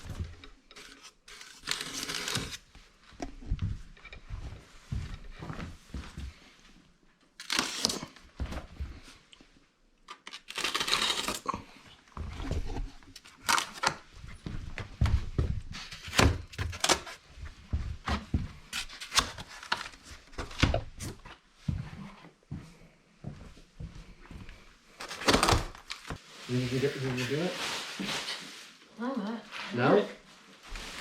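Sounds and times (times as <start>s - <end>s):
cardboard tearing: 0.8s - 2.7s, 7.4s - 8.2s, 10.2s - 11.5s.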